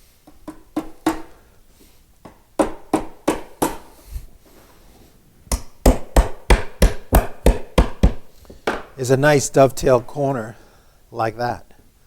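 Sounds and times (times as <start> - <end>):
mallet tapping wooden joint: 0.3 - 1.3, 2.2 - 3.9, 5.5 - 8.9.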